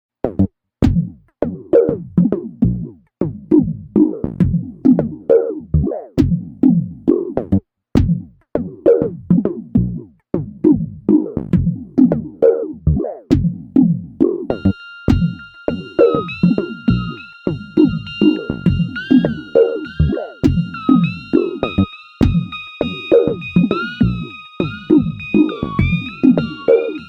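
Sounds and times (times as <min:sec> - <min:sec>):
drum machine beat: 0:00.2 - 0:05.4, 0:06.2 - 0:12.4, 0:13.3 - 0:27.0
held high synth tone: 0:14.5 - 0:27.0
short synth notes: 0:14.5 - 0:27.0.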